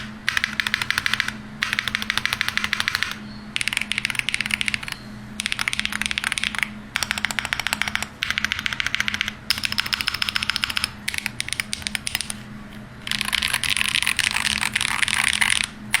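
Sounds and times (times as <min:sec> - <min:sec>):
fast keyboard typing clicks: 0:00.0 - 0:12.4, 0:13.0 - 0:16.0.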